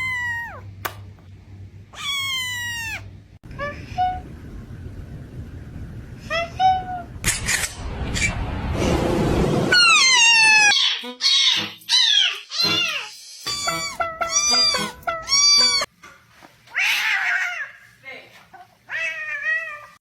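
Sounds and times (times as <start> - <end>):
cats meowing: 0.0 - 0.6, 2.0 - 3.1, 9.8 - 15.9, 16.7 - 17.8.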